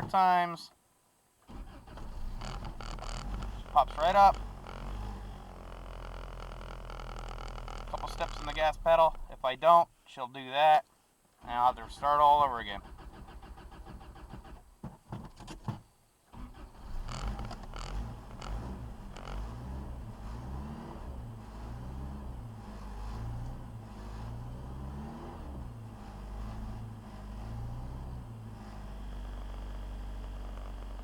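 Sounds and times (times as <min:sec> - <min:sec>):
engine idling roughly: 0:02.0 - 0:09.4, 0:16.6 - 0:20.4.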